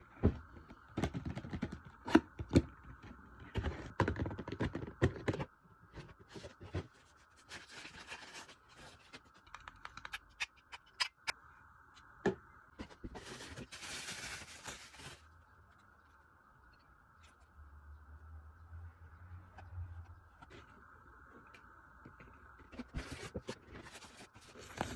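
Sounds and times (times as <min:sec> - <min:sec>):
faint hum: 0:00.0 - 0:24.9
packaging rustling: 0:13.0 - 0:15.3.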